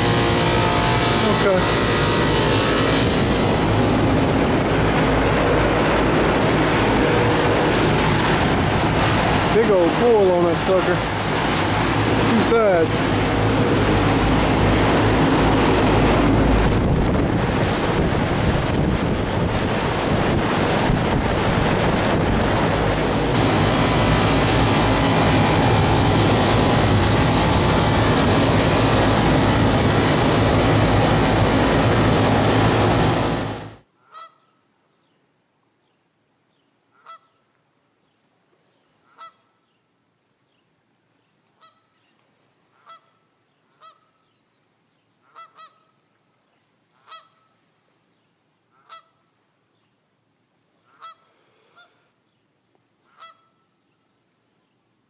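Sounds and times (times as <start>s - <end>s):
loud steady rushing noise: 0.0s - 33.8s
low hum: 0.0s - 33.8s
geese honking: 34.0s - 34.5s, 37.0s - 37.4s, 39.0s - 39.5s, 42.7s - 43.2s, 45.2s - 45.9s, 47.0s - 47.5s, 48.8s - 49.2s, 50.9s - 52.0s, 53.1s - 53.6s.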